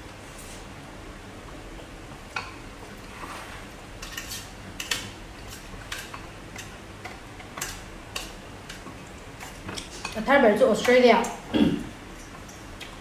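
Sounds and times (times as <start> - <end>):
cutlery clinking against dishes: 4.0 - 8.3.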